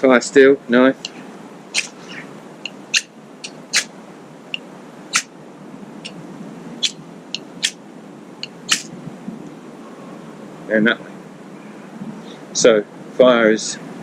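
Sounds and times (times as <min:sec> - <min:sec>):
knife scraping fire steel: 0:01.8 - 0:02.2.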